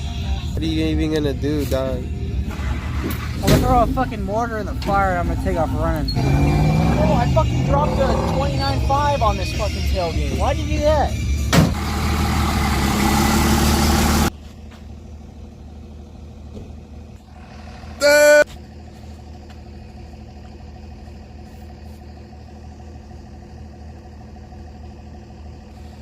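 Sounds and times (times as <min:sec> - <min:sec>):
vehicle engine idling: 0:00.0 - 0:26.0
short high beep: 0:18.0 - 0:18.4.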